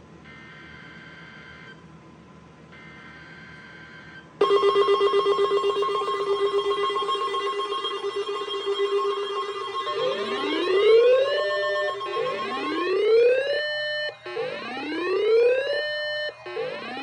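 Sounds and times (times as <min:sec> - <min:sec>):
buzzy data bursts: 0:04.4 - 0:14.8
pulsing alert tone: 0:04.4 - 0:17.0.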